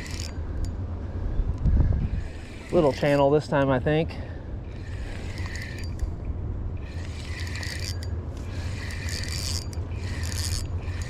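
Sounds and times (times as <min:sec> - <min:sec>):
fishing reel gears whirring: 0:00.0 - 0:00.8, 0:02.0 - 0:03.4, 0:04.6 - 0:06.2, 0:06.8 - 0:11.0
wind rumble: 0:00.0 - 0:11.0.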